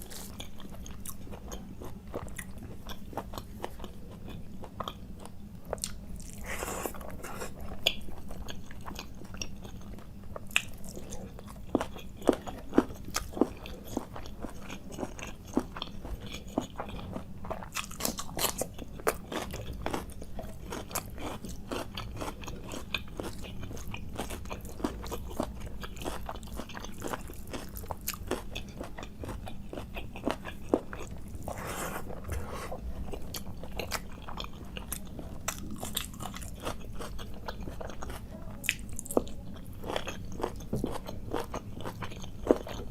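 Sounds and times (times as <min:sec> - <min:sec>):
close chewing and mouth clicks: 0:00.0 - 0:42.9.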